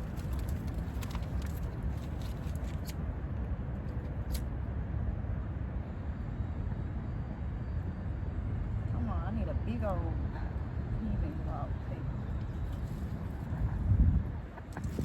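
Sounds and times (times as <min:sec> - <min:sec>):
light clicks and rustles: 0:00.0 - 0:03.0
wind buffeting microphone: 0:11.4 - 0:15.0.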